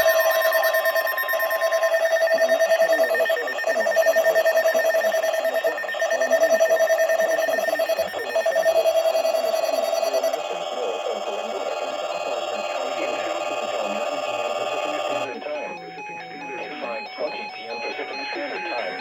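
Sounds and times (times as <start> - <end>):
pulsing alarm tone: 0.0 - 17.7.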